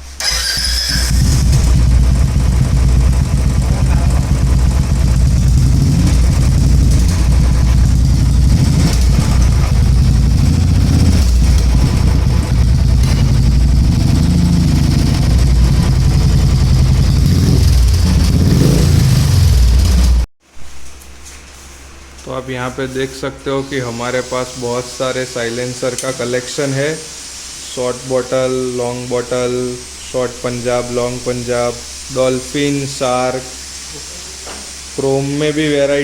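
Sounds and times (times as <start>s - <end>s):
motorcycle engine revving: 0.2s - 20.3s.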